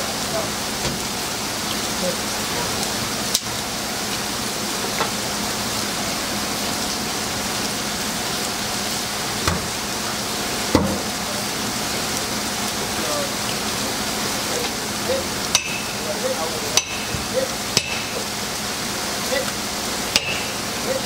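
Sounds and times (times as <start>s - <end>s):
running splashing water: 0.0s - 21.0s
sharp knocks: 16.8s - 18.2s, 20.1s - 20.6s.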